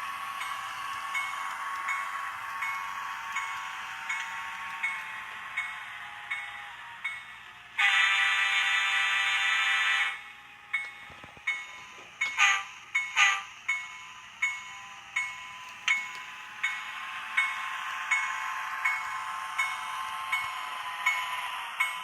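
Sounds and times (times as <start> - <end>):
locomotive bell ringing: 0.0 - 22.0
model locomotive horn: 7.8 - 10.2, 12.4 - 13.5.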